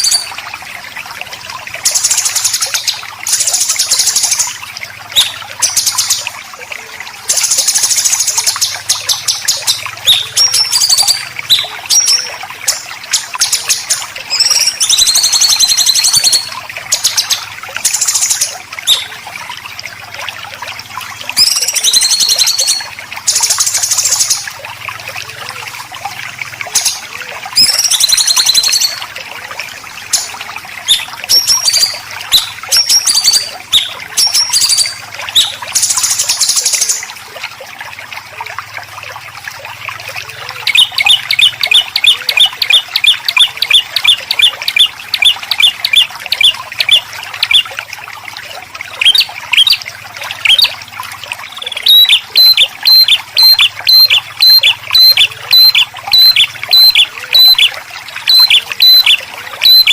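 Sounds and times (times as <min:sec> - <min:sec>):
trickling water: 0:00.0 - 0:59.9
birds singing harsh phrases: 0:01.8 - 0:19.2, 0:30.1 - 0:37.1, 0:40.3 - 0:47.7, 0:51.4 - 0:59.9.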